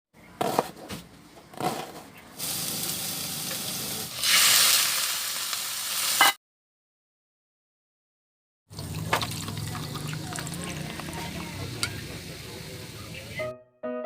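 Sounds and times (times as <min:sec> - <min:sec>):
food sizzling in a frying pan: 0:02.4 - 0:06.4, 0:08.8 - 0:13.4.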